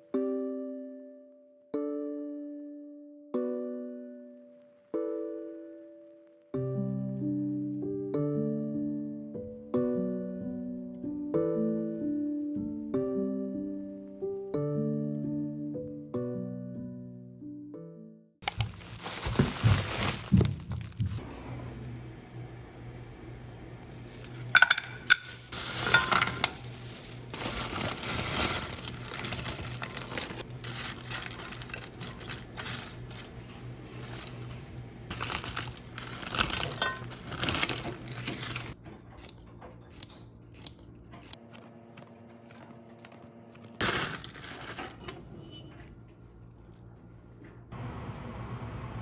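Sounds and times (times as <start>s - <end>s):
packaging crinkling: 18.4s - 21.2s, 23.9s - 41.7s, 42.4s - 45.0s
steady low hum: 21.2s - 43.8s
dishes and utensils clinking: 24.0s - 40.3s.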